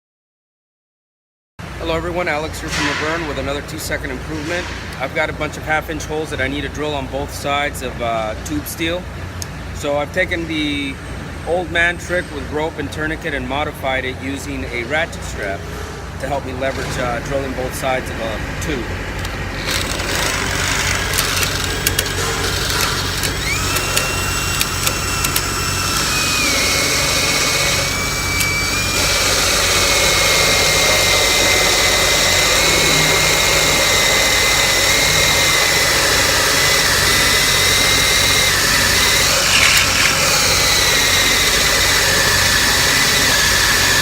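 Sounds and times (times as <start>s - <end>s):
sharp clicks: 19.2s - 29.6s, 36.9s - 41.8s
electric drill whining: 19.6s - 44.0s.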